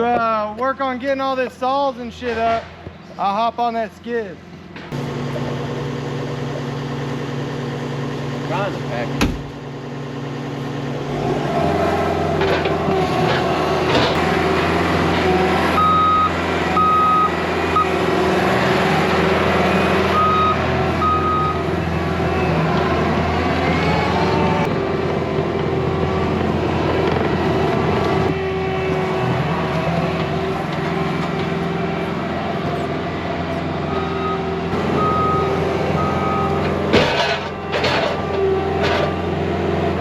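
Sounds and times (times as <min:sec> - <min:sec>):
diesel engine running: 0:00.0 - 0:40.0
backup alarm beeping: 0:15.8 - 0:18.0, 0:20.2 - 0:21.6, 0:35.0 - 0:36.6.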